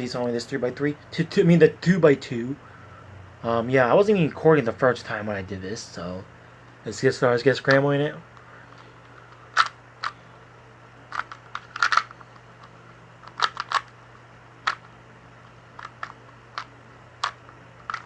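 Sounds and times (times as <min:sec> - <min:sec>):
puzzle cube layers clicking: 0:11.1 - 0:12.1, 0:13.2 - 0:13.9.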